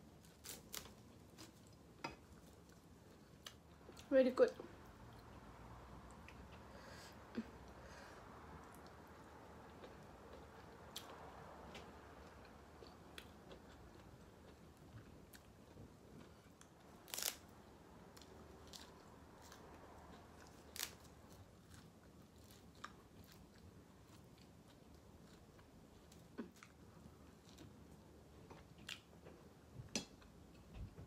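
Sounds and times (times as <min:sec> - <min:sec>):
chewing and eating noises: 0:08.5 - 0:17.3, 0:18.0 - 0:29.5.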